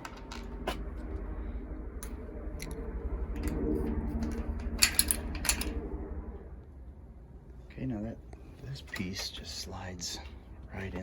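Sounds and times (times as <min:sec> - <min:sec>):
steady low hum: 0:00.0 - 0:11.0
small metal parts clicking: 0:04.2 - 0:05.8.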